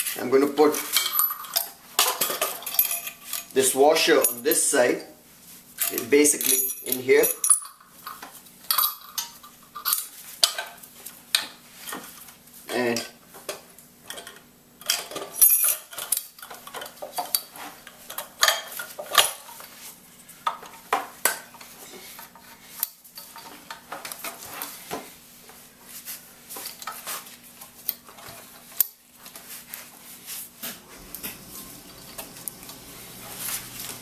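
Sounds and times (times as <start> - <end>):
metal engine parts clinking: 0.8 - 4.8, 5.8 - 10.1.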